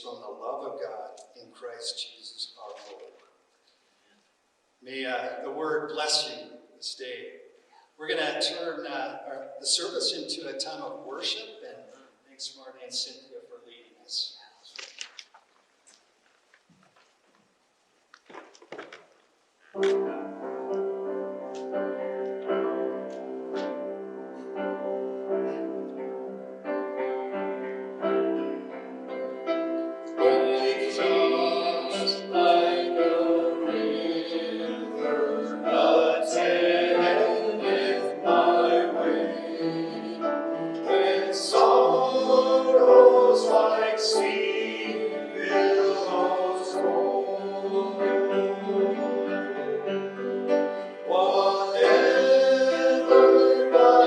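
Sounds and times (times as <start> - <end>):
keyboard playing sustained chords: 19.8 - 54.0
voices singing: 30.1 - 50.2, 51.0 - 54.0.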